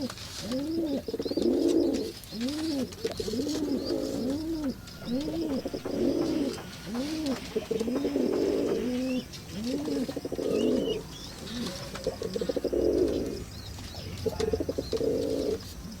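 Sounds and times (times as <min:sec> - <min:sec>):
pigeon cooing: 0:00.0 - 0:16.0
faint high squeaks: 0:02.4 - 0:08.0.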